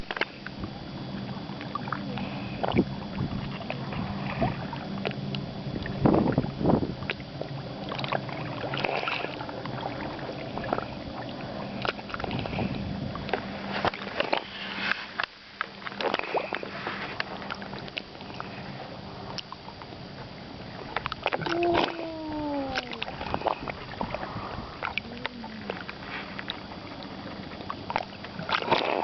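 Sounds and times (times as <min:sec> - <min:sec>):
water sloshing and gurgling: 0:00.0 - 0:29.0.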